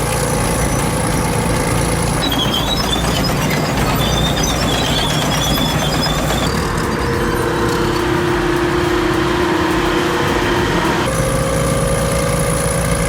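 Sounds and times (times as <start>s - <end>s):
heavy machine rumbling: 0.0s - 13.0s
high-pitched squeals: 0.0s - 13.0s.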